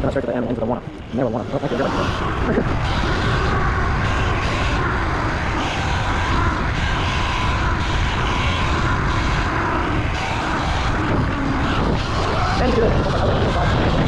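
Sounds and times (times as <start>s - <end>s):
electric motor whine: 0.0s - 14.0s
wind buffeting microphone: 0.0s - 14.0s.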